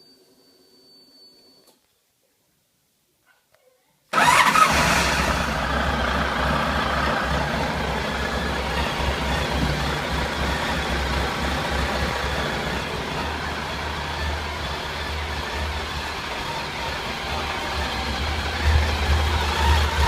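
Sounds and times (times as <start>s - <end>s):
engine running with deep rumble: 4.2s - 20.0s.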